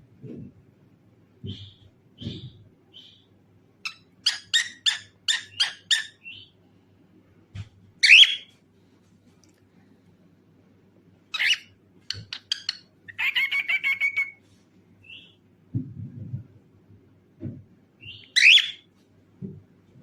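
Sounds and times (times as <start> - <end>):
cockatiel calling: 3.9 - 6.5, 8.0 - 8.5, 11.3 - 14.4, 18.0 - 18.8.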